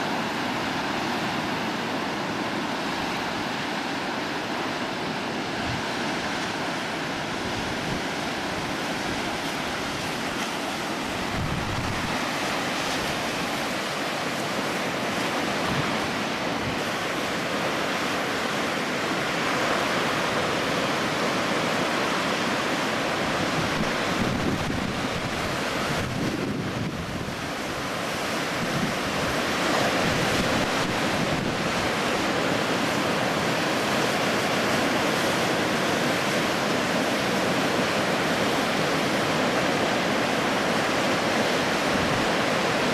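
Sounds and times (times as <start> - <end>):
ocean surf breaking: 0.0 - 42.9
wind rumbling on microphone: 11.0 - 14.0, 23.3 - 27.9.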